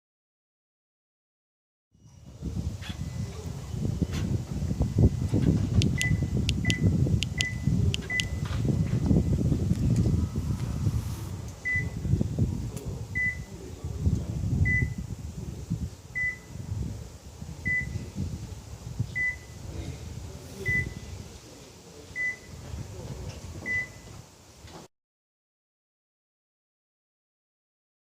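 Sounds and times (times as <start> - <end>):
low rumble: 2.0 - 21.2
high electronic beep: 5.8 - 8.5, 11.6 - 12.0, 13.2 - 13.5, 14.6 - 15.0, 16.2 - 16.5, 17.7 - 18.0, 19.2 - 19.6, 20.7 - 21.0.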